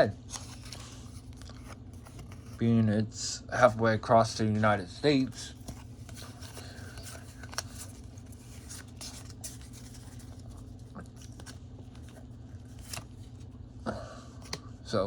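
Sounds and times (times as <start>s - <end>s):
steady low hum: 0.0s - 15.0s
trading cards being handled: 0.2s - 2.7s, 5.2s - 13.6s
faint scratching: 5.3s - 13.1s.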